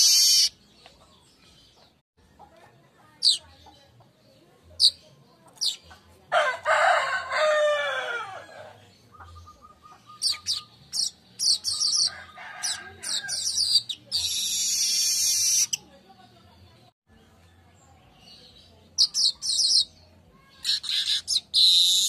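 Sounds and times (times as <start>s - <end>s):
buzzy bird song: 0.0s - 6.3s, 8.5s - 22.0s
birds chirping: 0.0s - 22.0s
rooster crowing: 6.3s - 8.7s, 12.1s - 13.3s.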